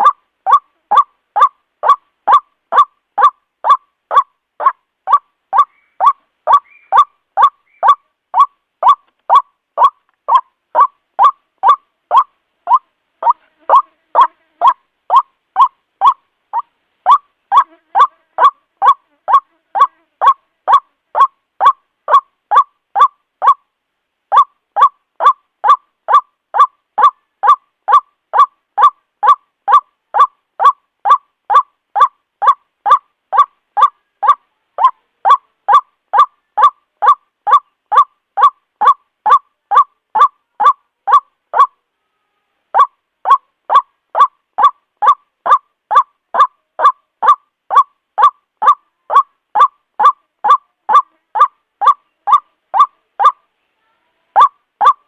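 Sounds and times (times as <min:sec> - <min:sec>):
waterhen calling short notes: 0:00.0 - 0:23.6.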